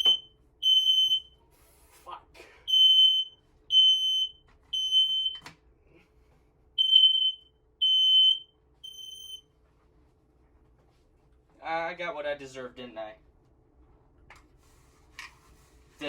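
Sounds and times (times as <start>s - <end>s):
smoke alarm beeps: 0.0s - 1.4s, 2.7s - 5.4s, 6.8s - 9.5s.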